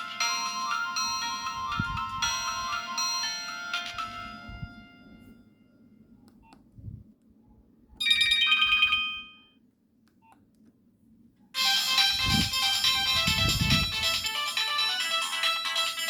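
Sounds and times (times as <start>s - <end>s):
phone ringtone melody: 0.0s - 5.4s, 8.0s - 9.5s, 11.6s - 16.0s.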